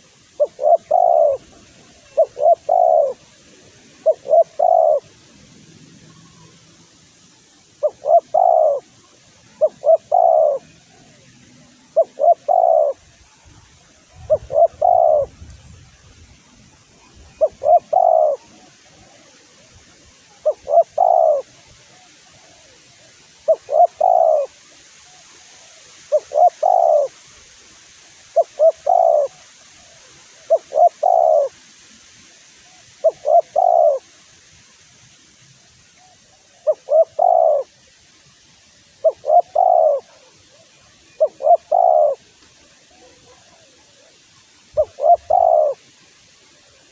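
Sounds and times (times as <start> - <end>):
dove cooing: 0.0 - 5.2, 7.8 - 13.2, 14.2 - 15.5, 17.1 - 19.4, 20.2 - 22.8, 23.4 - 25.1, 25.7 - 27.2, 28.2 - 31.6, 32.7 - 34.2, 36.0 - 37.8, 39.0 - 42.3, 42.9 - 46.0.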